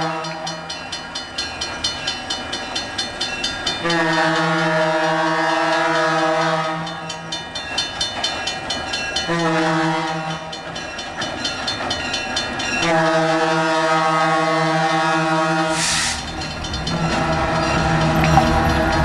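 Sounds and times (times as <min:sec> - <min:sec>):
train horn tone: 0:03.8 - 0:07.2, 0:09.3 - 0:10.5, 0:12.8 - 0:19.0.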